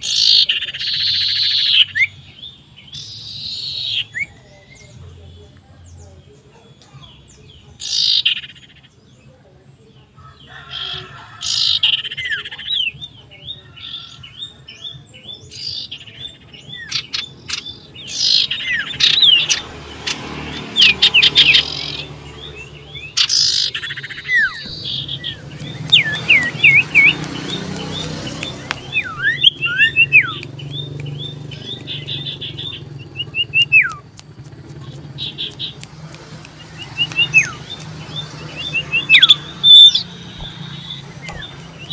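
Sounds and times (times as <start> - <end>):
bird chirping and whistling: 0.0 - 4.9, 15.3 - 34.2, 35.2 - 41.9
clicks: 24.6 - 32.8.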